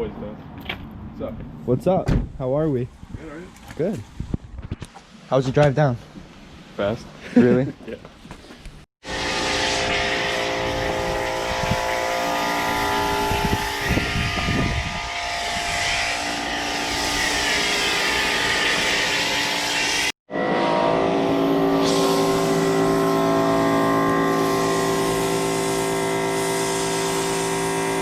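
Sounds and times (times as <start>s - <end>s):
wind noise: 1.4s - 4.9s, 10.8s - 12.0s, 12.7s - 17.7s.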